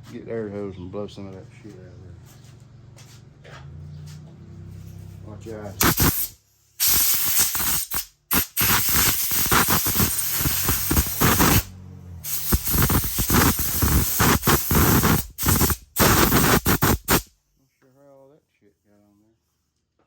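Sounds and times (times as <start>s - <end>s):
air blow gun hissing: 5.8s - 17.3s.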